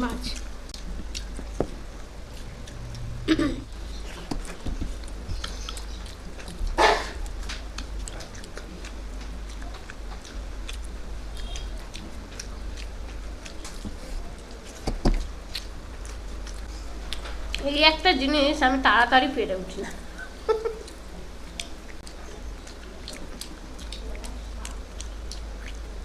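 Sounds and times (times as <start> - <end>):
person chewing: 0.2 - 17.6, 20.1 - 26.0.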